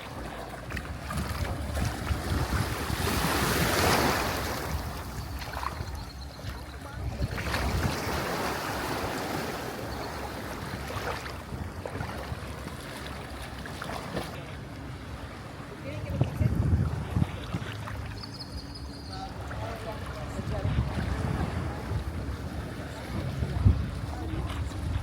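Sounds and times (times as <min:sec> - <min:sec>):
sea waves: 0:00.0 - 0:25.0
wind buffeting microphone: 0:00.6 - 0:12.2, 0:15.8 - 0:25.0.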